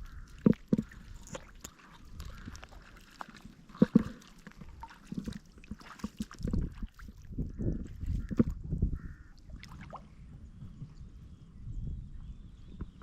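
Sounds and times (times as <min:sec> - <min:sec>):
water sloshing and splashing: 0:00.0 - 0:10.2.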